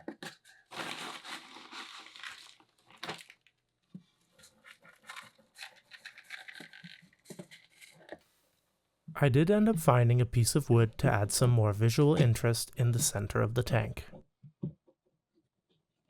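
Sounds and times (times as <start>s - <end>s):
plastic bag rustling and crinkling: 0.0s - 8.2s.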